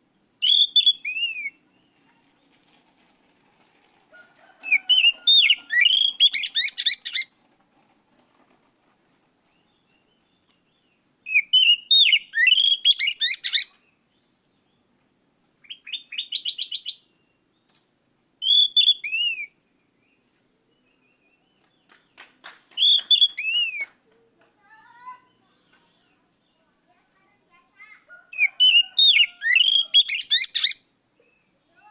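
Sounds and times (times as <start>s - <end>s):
bird singing whistled phrases: 0.4s - 1.6s, 4.6s - 7.3s, 11.3s - 13.7s, 15.6s - 17.1s, 18.4s - 19.6s, 22.8s - 23.9s, 28.4s - 30.9s.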